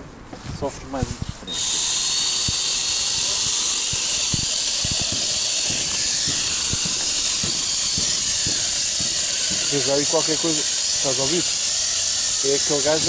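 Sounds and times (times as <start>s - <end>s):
quadcopter propellers hissing: 1.5s - 13.0s
low thumps: 2.2s - 12.4s.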